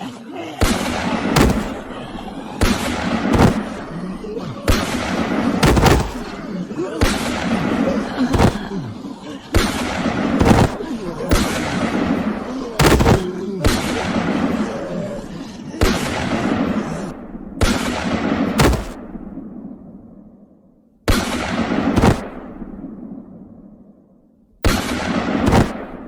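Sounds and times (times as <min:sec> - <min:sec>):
sharp gunshots with echo: 0:00.6 - 0:04.0, 0:04.7 - 0:06.5, 0:07.1 - 0:08.7, 0:09.6 - 0:14.4, 0:17.6 - 0:19.2, 0:21.1 - 0:22.8, 0:24.6 - 0:26.0.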